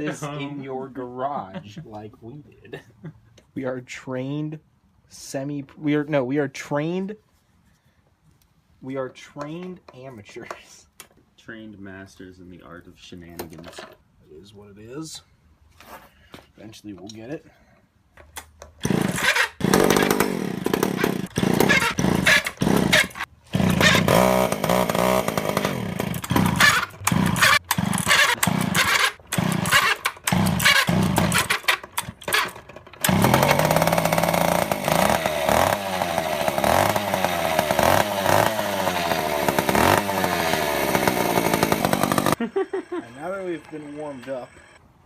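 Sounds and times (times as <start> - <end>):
chainsaw engine revving: 18.8 - 43.4.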